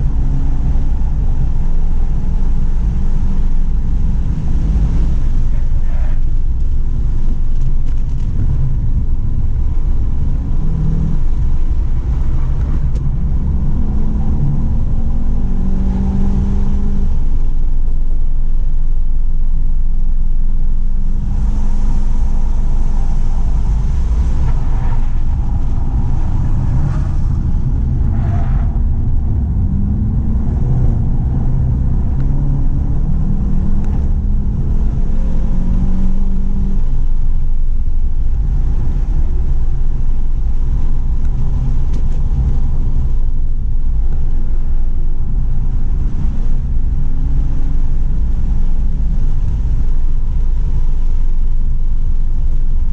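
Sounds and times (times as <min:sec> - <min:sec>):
car engine accelerating hard: 0:00.0 - 0:18.0, 0:20.9 - 0:51.2
road and wind noise: 0:00.0 - 0:52.9.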